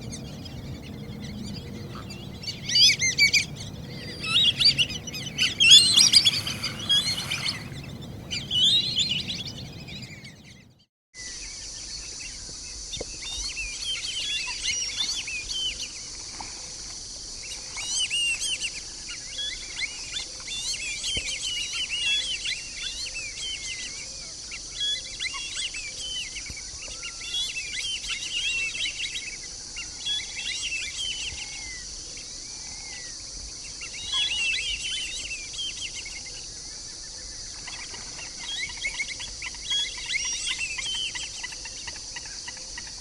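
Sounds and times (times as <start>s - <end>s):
ducks whistling calls: 0.0s - 10.8s.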